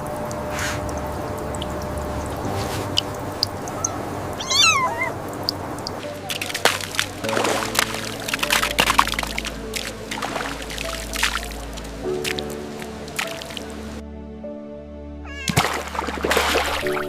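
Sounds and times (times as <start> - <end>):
background music: 0.0 - 17.0
cat meowing: 3.6 - 5.2, 15.2 - 15.6.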